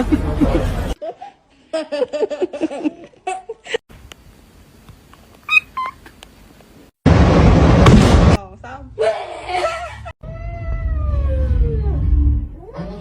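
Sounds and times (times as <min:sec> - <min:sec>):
short high-pitched calls: 0:05.5 - 0:06.0.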